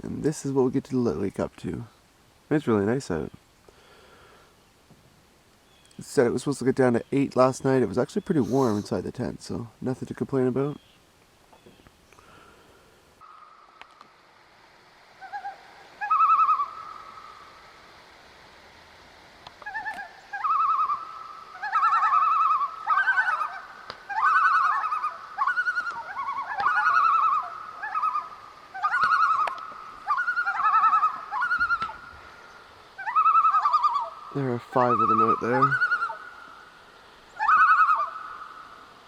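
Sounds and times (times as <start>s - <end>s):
loons giving tremolo calls: 8.3s - 9.1s, 15.2s - 17.5s, 19.6s - 38.9s.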